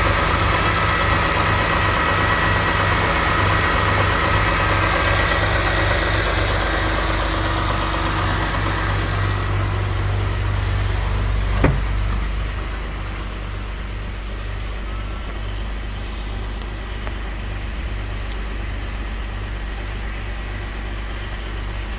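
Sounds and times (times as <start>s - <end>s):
car engine idling with rattle: 0.0s - 21.9s.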